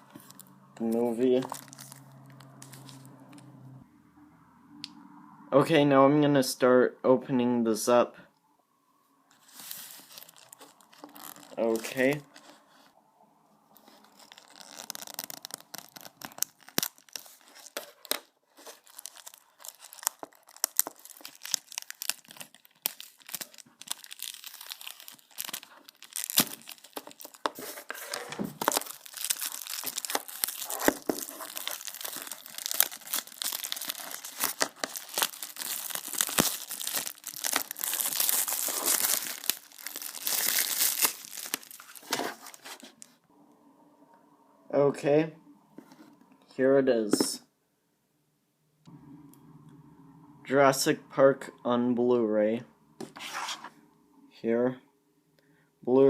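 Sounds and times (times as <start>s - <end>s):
plastic wrapping crinkling: 0.0s - 3.4s, 9.3s - 12.6s, 13.7s - 43.2s.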